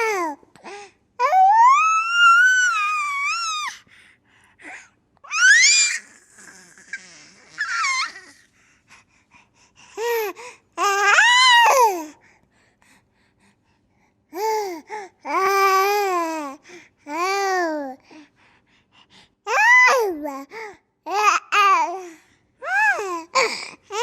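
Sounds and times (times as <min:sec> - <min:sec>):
baby squealing: 0:05.3 - 0:08.4.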